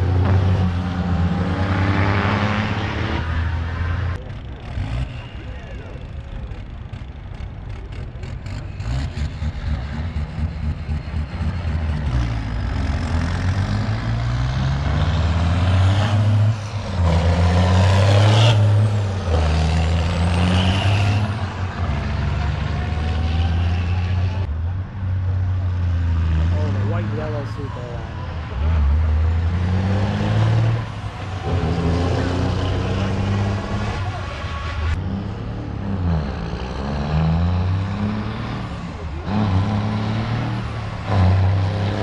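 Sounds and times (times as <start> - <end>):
diesel truck engine revving: 0.0 - 42.0.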